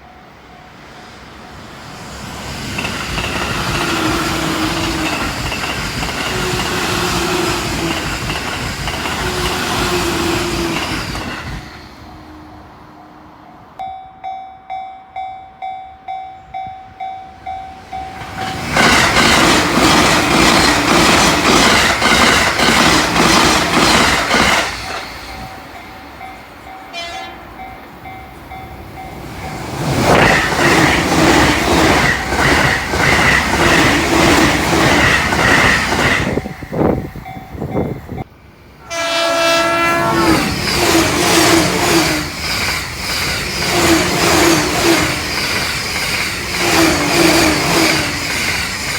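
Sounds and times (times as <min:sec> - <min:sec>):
train rushing past: 0:00.0 - 0:48.9
wheels clattering over rail joints: 0:17.8 - 0:25.7
train horn: 0:26.6 - 0:27.8, 0:38.8 - 0:42.3.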